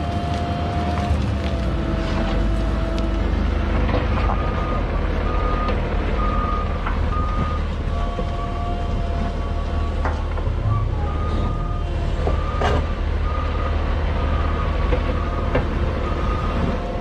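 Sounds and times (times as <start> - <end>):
diesel machinery running: 0.0 - 17.0
reversing alarm beeping: 4.4 - 16.7
hydraulic whine: 8.5 - 13.4.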